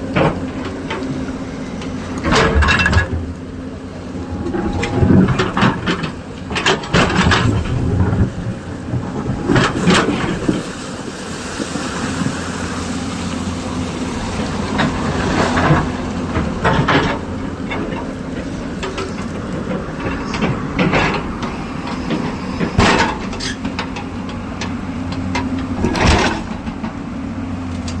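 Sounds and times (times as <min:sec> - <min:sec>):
excavator diesel engine running: 0:00.0 - 0:28.0
metal clanks and knocks: 0:02.2 - 0:03.4, 0:04.2 - 0:10.6, 0:14.7 - 0:27.0.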